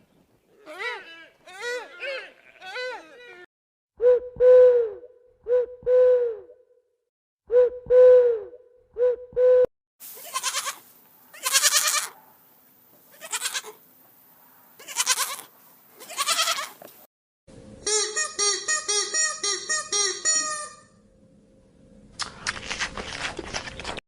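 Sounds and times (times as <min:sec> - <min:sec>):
goat bleating: 0:00.6 - 0:03.5, 0:10.2 - 0:12.2, 0:13.1 - 0:13.8, 0:14.8 - 0:16.8.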